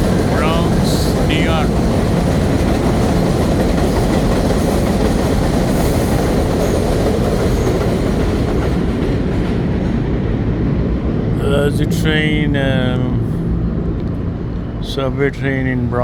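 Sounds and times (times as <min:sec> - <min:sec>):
wheels clattering on rails: 0:00.0 - 0:10.4
subway train rumbling: 0:00.0 - 0:16.0.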